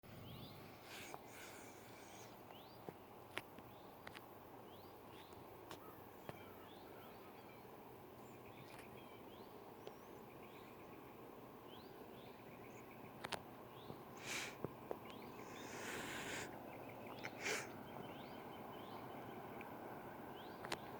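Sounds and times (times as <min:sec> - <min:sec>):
faint background noise: 0:00.1 - 0:20.9
small birds chirping: 0:00.1 - 0:20.9
light clicks: 0:13.2 - 0:13.5.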